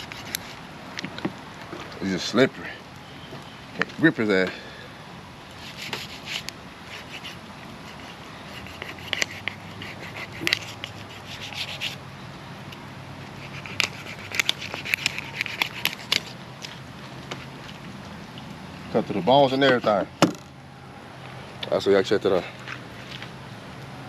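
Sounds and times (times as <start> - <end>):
knife sawing through fish flesh: 0.0 - 0.6, 5.6 - 12.0, 13.4 - 16.4.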